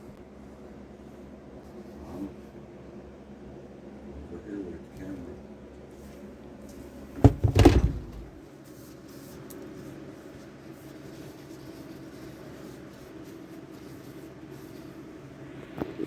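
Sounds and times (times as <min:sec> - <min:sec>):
faint low hum: 0:07.0 - 0:08.4
knocks and bumps: 0:07.2 - 0:08.4.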